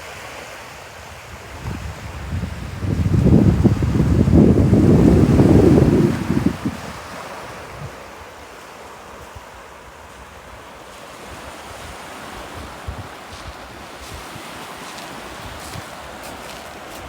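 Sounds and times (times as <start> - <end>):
sea surf washing on shore: 0.0 - 17.0
wind buffeting microphone: 1.0 - 8.1, 11.7 - 17.0.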